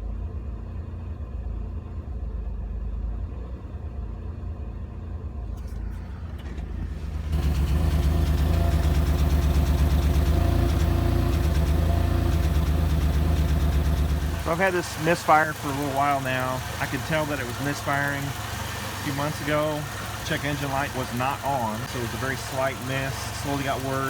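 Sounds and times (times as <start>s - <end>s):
car engine idling roughly: 5.4s - 24.0s.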